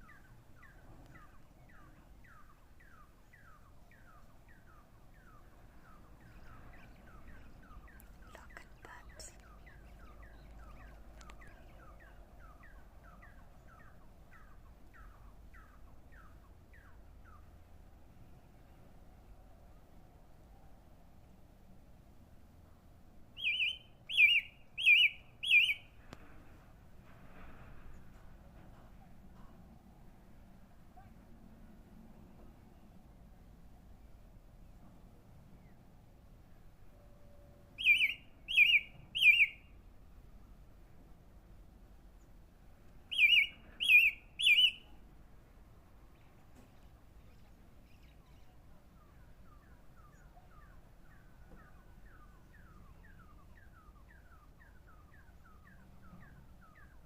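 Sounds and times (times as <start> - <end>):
bird whistled calls: 23.4 - 25.9, 37.8 - 39.7, 43.1 - 45.0
bird calling short downslurred notes: 43.1 - 44.9.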